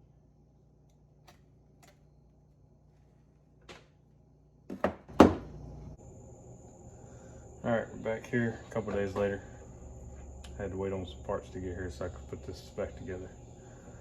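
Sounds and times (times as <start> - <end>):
low hum: 5.5 - 14.0
thin high whine: 5.6 - 14.0.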